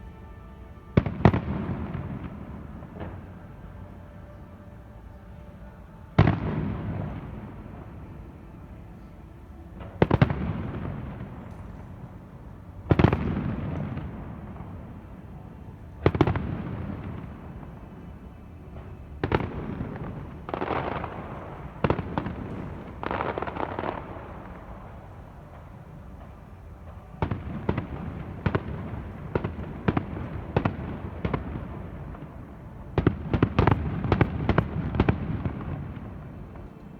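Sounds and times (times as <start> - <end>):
fireworks crackling: 9.8 - 36.9
fireworks bangs: 16.0 - 36.9.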